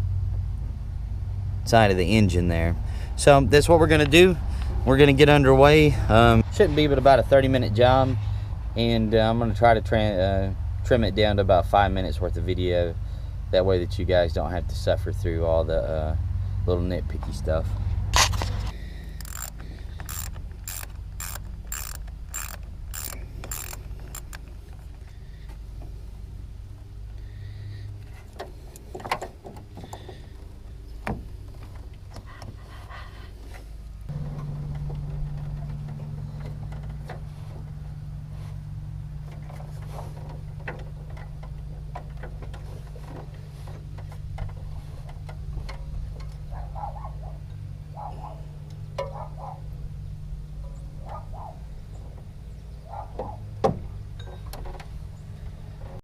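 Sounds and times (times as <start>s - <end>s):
socket ratchet clicking: 19.2s - 24.6s.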